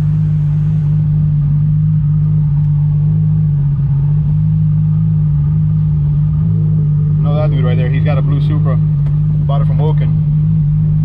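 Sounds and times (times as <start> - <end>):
car engine idling: 0.0 - 11.0.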